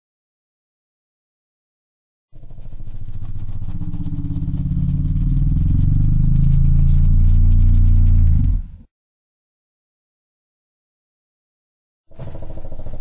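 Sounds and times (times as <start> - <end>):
engine running with pulsing note: 2.4 - 8.8.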